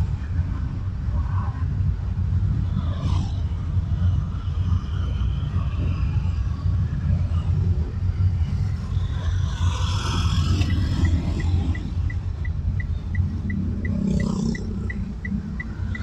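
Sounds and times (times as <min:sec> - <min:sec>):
engine and tyre rumble: 0:00.0 - 0:16.0
regular ticking: 0:11.0 - 0:16.0.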